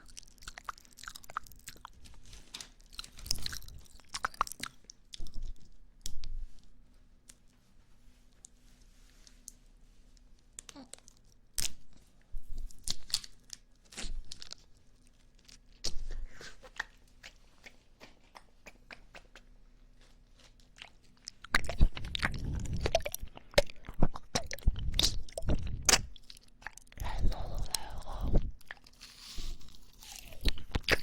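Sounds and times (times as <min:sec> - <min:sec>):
mouth clicks and smacks: 0:15.8 - 0:19.6, 0:21.3 - 0:28.8, 0:30.2 - 0:31.0.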